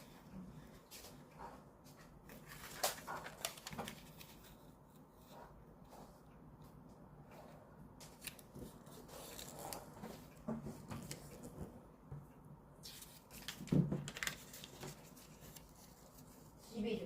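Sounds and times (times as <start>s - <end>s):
paper rustling and crackling: 2.2s - 4.7s, 8.0s - 11.8s, 12.8s - 17.0s.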